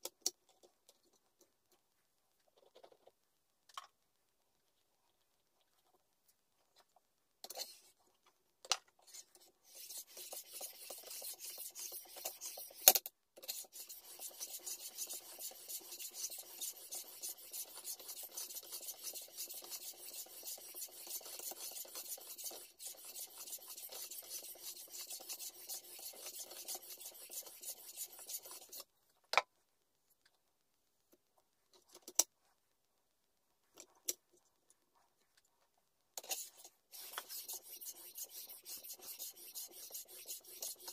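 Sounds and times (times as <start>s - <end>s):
knife scraping on whetstone: 36.2s - 40.9s.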